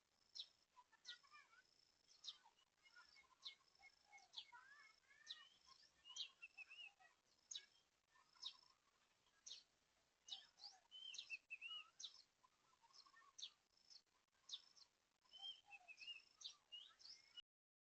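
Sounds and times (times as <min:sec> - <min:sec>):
birds chirping: 0:00.2 - 0:17.4.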